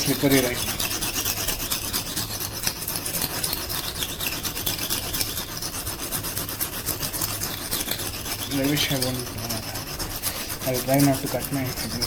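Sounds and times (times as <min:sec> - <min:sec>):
knife scraping on whetstone: 0:00.0 - 0:12.0.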